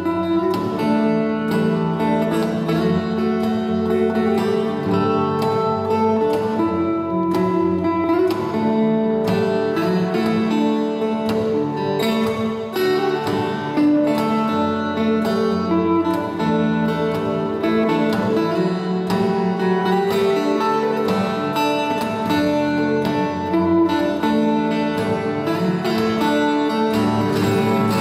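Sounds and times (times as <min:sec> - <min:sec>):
acoustic guitar playing: 0:00.0 - 0:28.0.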